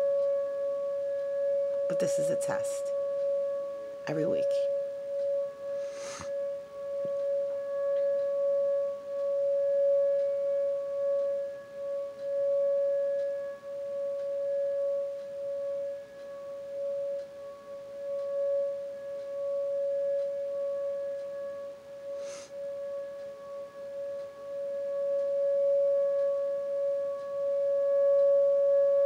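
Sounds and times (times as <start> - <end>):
tornado warning siren: 0.0 - 29.0.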